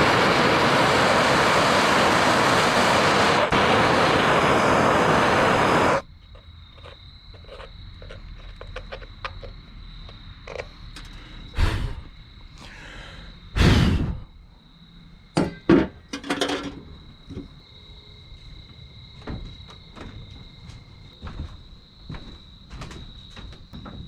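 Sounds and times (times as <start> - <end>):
knocks and thunks: 15.4 - 16.0, 19.2 - 20.5, 21.2 - 24.0.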